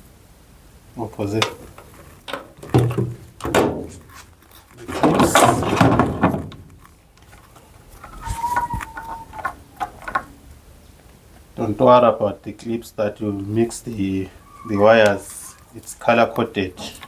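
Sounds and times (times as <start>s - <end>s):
rustling and scraping: 1.2s - 11.7s, 13.3s - 17.0s
brief squeak: 8.1s - 9.5s.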